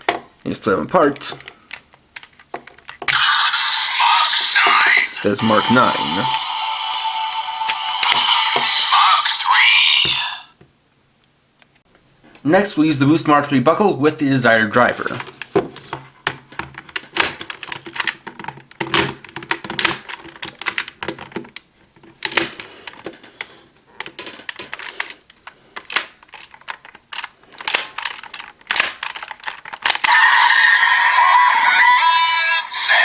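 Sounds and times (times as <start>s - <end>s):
loud electronic music from toy speaker: 3.1s - 10.5s, 30.1s - 33.0s
plastic toy clicks and clacks: 16.8s - 21.6s, 24.0s - 30.2s.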